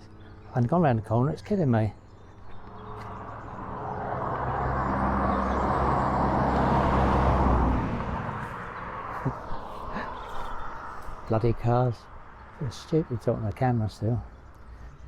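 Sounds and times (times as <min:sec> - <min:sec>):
car driving past: 0:02.5 - 0:11.2.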